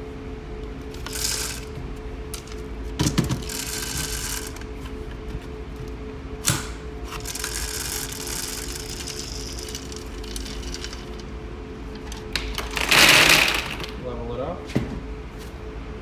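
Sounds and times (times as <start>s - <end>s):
machinery hum: 0.0s - 16.0s
corn kernels pouring: 7.3s - 11.2s, 12.6s - 13.9s.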